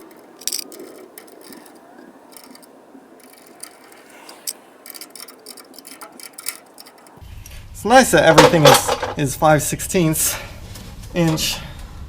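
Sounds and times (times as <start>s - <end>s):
ratchet wrench clicking: 0.0s - 7.2s.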